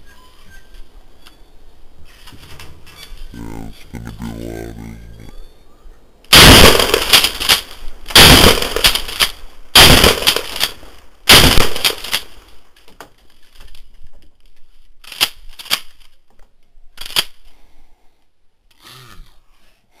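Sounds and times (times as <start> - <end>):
shotgun shots: 6.3 - 12.4.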